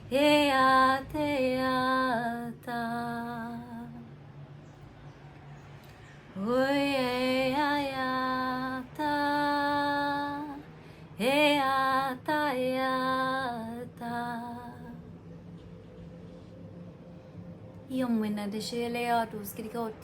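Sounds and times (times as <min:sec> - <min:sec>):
woman singing long held notes: 0:00.0 - 0:04.2, 0:06.3 - 0:15.1, 0:17.8 - 0:20.0.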